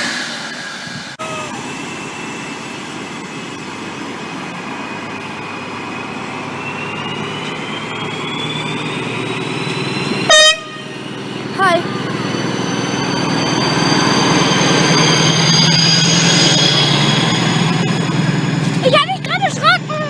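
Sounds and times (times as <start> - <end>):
rising whine: 0.0 - 19.9
train rumbling past: 0.0 - 20.0
loud high tone: 4.8 - 20.0.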